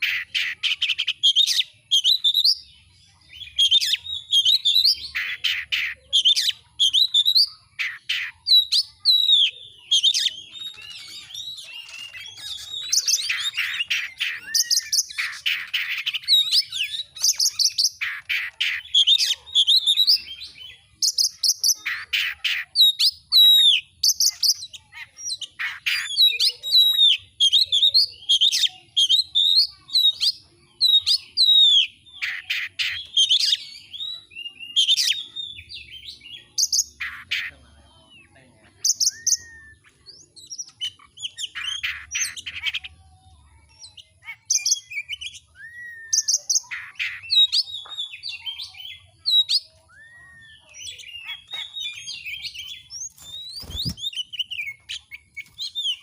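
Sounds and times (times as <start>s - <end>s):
songbird whistling and trilling: 0.0s - 37.5s, 38.8s - 42.9s, 43.7s - 56.0s.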